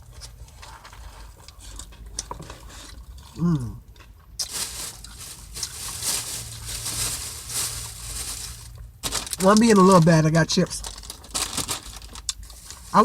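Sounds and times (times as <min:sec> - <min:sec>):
person chewing food: 0:00.0 - 0:06.6
person humming mm: 0:03.4 - 0:03.8
plastic chip bag crinkling: 0:04.4 - 0:13.0.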